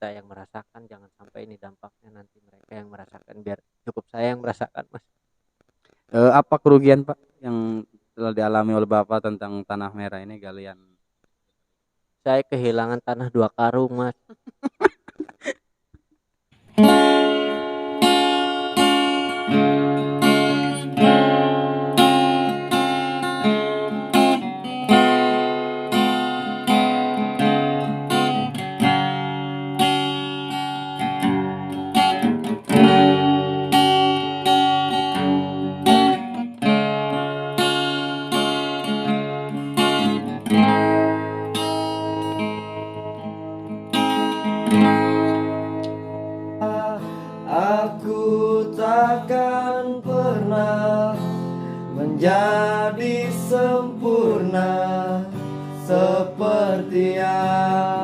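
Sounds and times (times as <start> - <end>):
acoustic guitar playing: 16.5 - 58.0.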